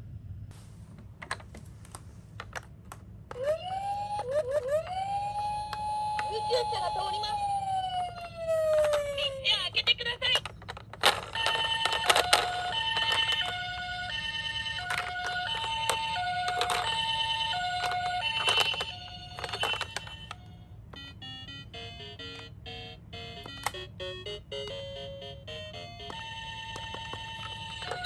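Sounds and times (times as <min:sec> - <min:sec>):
toy two-tone sirens: 0:03.3 - 0:28.0
plastic clicks: 0:08.2 - 0:21.1, 0:23.4 - 0:23.9, 0:26.0 - 0:28.0
electronic melody: 0:11.6 - 0:28.0.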